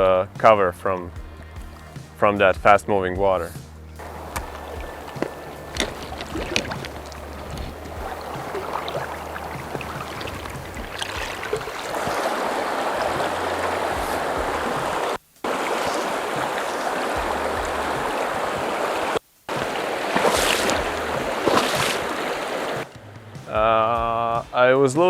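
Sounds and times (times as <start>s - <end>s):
river rushing: 4.0s - 23.0s.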